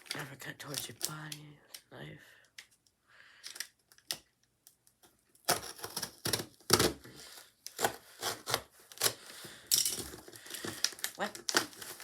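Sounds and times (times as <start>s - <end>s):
knife cutting tape and cardboard: 5.4s - 12.0s.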